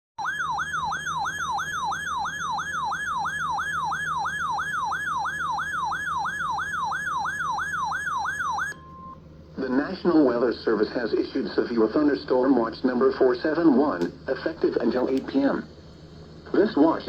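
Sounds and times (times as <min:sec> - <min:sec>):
electronic alert siren tone: 0:00.2 - 0:09.2.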